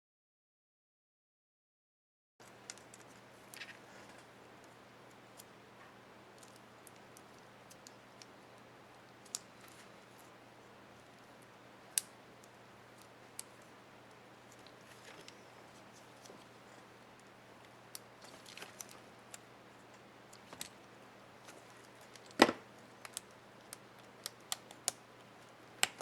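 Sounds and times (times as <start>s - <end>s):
faint steady hum: 2.4s - 26.0s
small plastic clicks: 6.3s - 10.3s.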